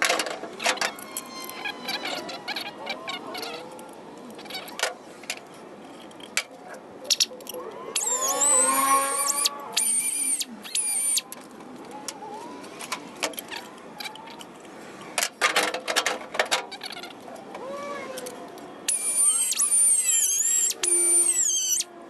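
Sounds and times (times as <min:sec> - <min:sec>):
drill cutter squealing into steel: 0:08.0 - 0:11.3, 0:18.9 - 0:21.9.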